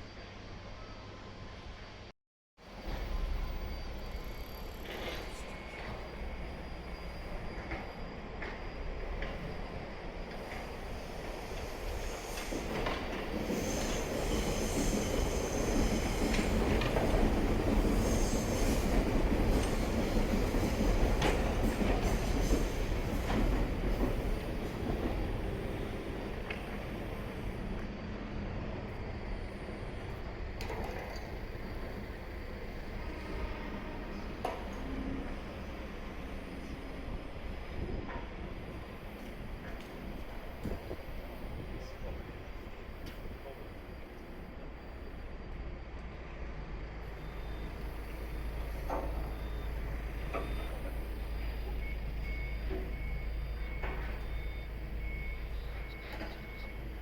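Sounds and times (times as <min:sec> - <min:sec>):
train rumbling on track: 0:00.0 - 0:57.0
city traffic noise: 0:15.2 - 0:57.0
reversing alarm beeps: 0:47.1 - 0:57.0.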